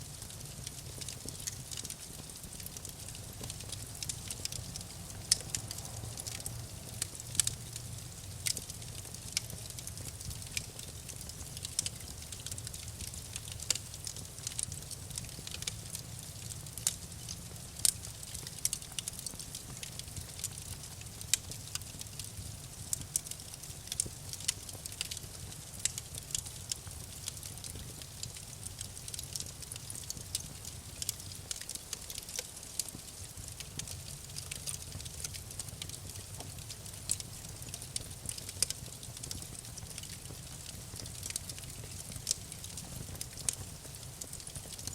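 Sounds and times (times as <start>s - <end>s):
low rumble of flames: 0.0s - 44.9s
wood fire crackling and popping: 0.0s - 44.9s.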